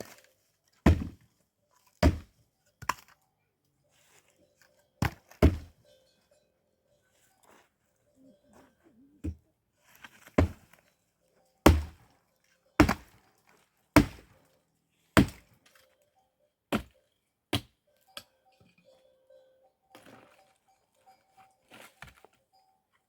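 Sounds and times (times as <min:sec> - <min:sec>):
wood being chopped: 0:00.8 - 0:01.2, 0:02.0 - 0:03.1, 0:05.0 - 0:05.7, 0:10.2 - 0:10.8, 0:11.6 - 0:12.0, 0:12.8 - 0:13.2, 0:14.0 - 0:14.3, 0:15.2 - 0:15.6, 0:16.7 - 0:17.7.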